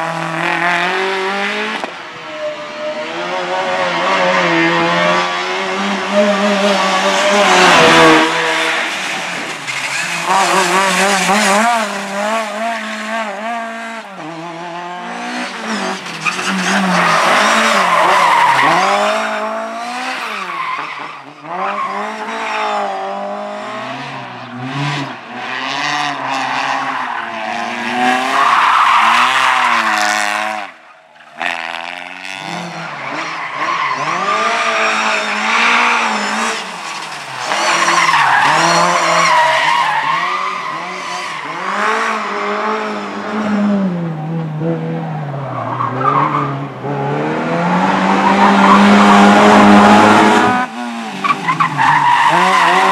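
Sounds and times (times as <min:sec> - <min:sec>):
tyres squealing and skidding: 0:04.1 - 0:13.6, 0:15.2 - 0:23.1, 0:25.6 - 0:42.6, 0:45.2 - 0:46.7, 0:47.6 - 0:52.9
car engine revving hard: 0:46.1 - 0:52.9.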